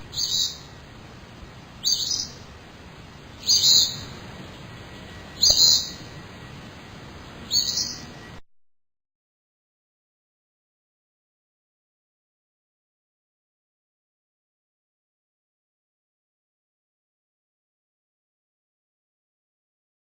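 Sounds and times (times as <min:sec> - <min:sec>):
bird calling: 0:00.0 - 0:00.9, 0:01.7 - 0:02.6, 0:03.2 - 0:04.3, 0:05.0 - 0:08.4
steady background hiss: 0:00.0 - 0:08.4.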